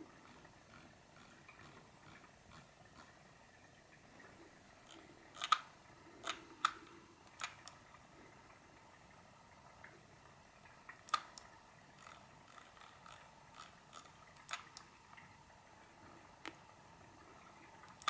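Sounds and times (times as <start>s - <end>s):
computer mouse clicking: 4.9s - 7.8s.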